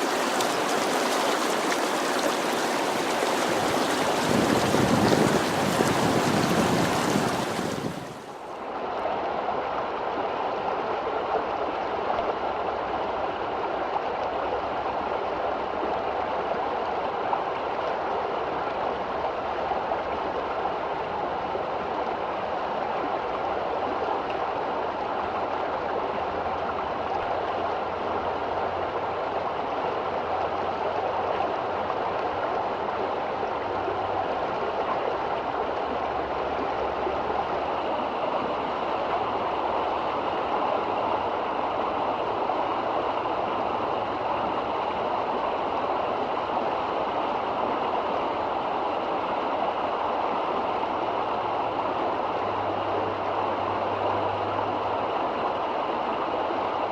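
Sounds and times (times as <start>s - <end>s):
river water flowing: 0.0s - 56.9s.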